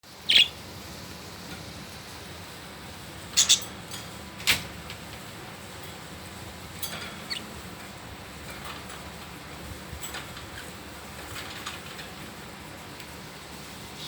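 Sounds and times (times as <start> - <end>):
budgies chirping and clicking: 0.2 - 0.6, 3.2 - 4.6, 5.8 - 7.9.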